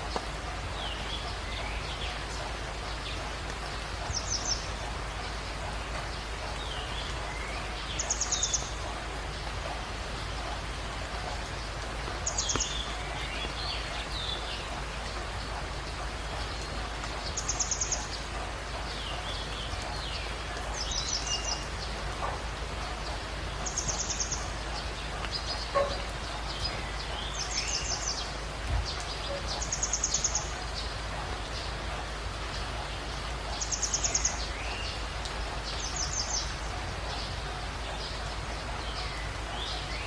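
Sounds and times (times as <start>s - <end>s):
background hiss: 0.0s - 40.0s
birds chirping: 0.0s - 40.0s.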